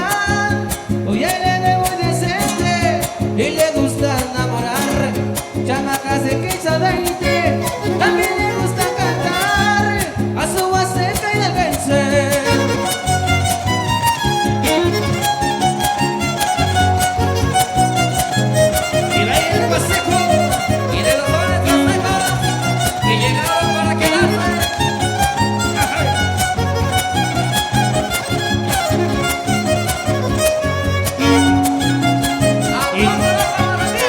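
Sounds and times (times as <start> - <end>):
strummed guitars: 0.0 - 34.0
violin melody: 6.9 - 10.2, 12.3 - 34.0.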